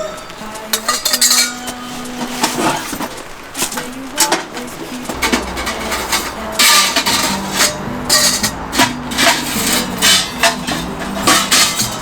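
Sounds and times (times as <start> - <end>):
background music: 0.0 - 12.0
loud knocking and scraping: 4.5 - 12.0.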